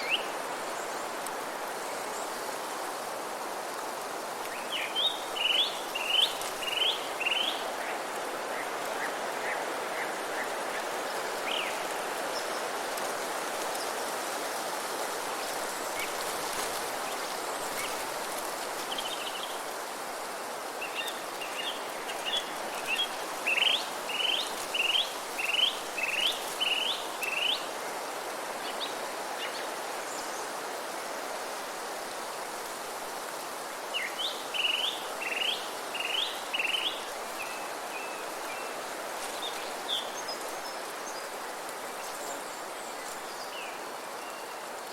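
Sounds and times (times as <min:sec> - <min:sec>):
songbird singing: 0:00.0 - 0:02.5, 0:04.5 - 0:12.7, 0:20.8 - 0:27.7, 0:33.9 - 0:41.4
wind through trees: 0:00.0 - 0:44.9.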